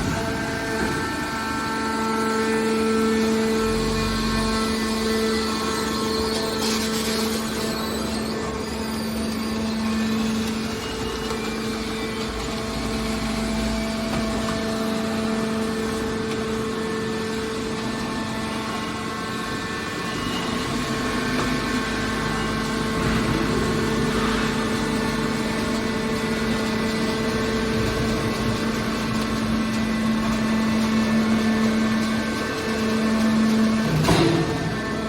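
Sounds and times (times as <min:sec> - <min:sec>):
scrap-metal baler humming: 0:00.0 - 0:35.0.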